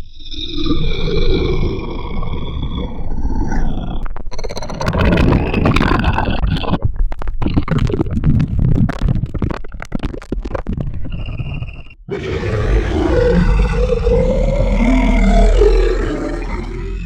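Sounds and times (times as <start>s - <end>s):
gurgling monster growl: 12.1s - 17.0s.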